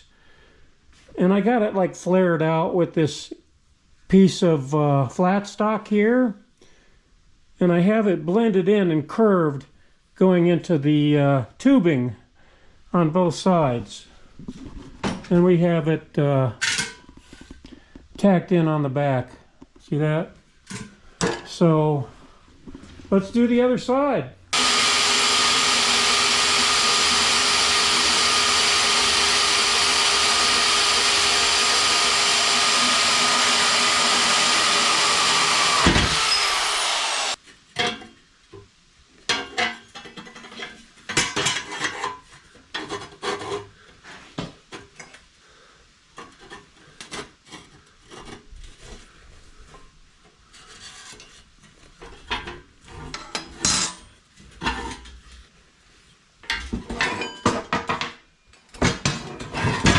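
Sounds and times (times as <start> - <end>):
electric power tool running: 24.5 - 37.4.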